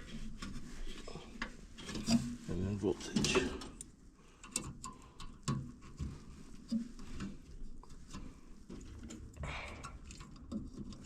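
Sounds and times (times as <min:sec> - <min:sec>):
rustling of hands: 0:00.0 - 0:02.7.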